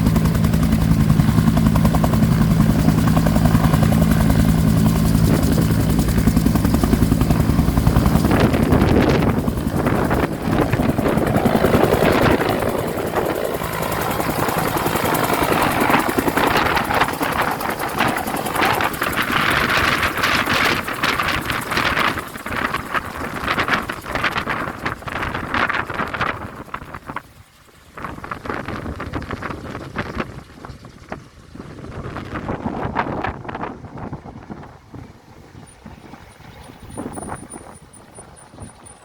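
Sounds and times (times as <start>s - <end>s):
helicopter rotor beating: 0.0s - 39.0s.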